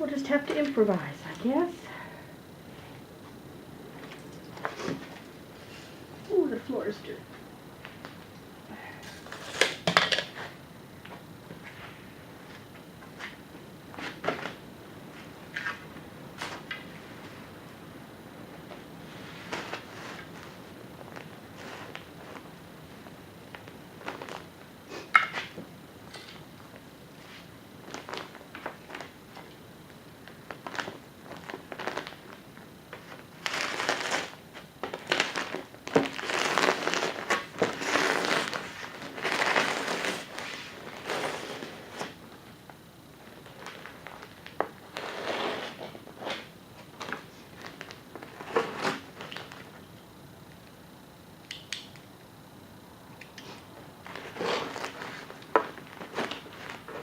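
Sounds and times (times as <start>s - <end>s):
insulation crumpling and rustling: 0.2s - 17.8s, 18.4s - 51.2s, 52.0s - 57.0s.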